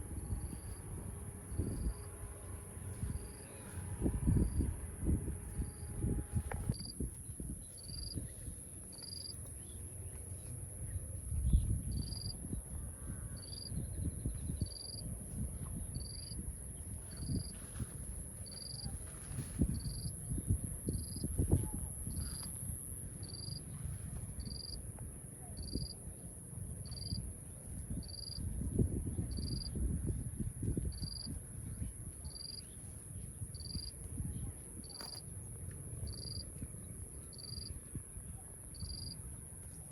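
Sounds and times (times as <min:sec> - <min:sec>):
insects high-pitched drone: 0:00.0 - 0:08.3, 0:19.4 - 0:24.8, 0:29.3 - 0:29.8, 0:30.8 - 0:34.1, 0:34.8 - 0:36.5, 0:37.1 - 0:37.8, 0:38.7 - 0:39.3.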